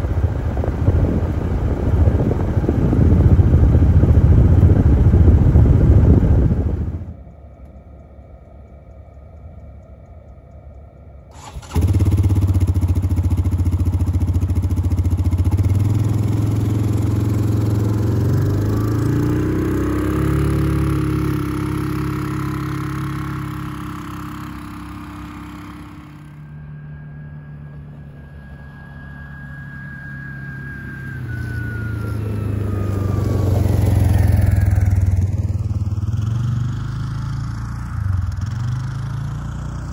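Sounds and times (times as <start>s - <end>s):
utility vehicle engine revving: 11.3s - 39.9s.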